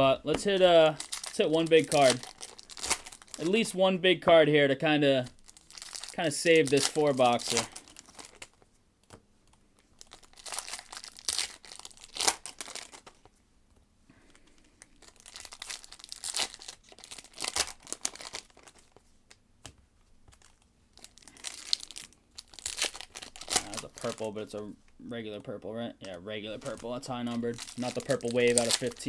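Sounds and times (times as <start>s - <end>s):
cards being handled: 0.2s - 3.8s, 6.1s - 9.6s, 26.0s - 29.0s
card pack wrappers tearing: 0.3s - 3.8s, 5.2s - 8.6s, 10.0s - 13.2s, 14.9s - 19.0s, 20.3s - 24.7s, 26.0s - 29.0s.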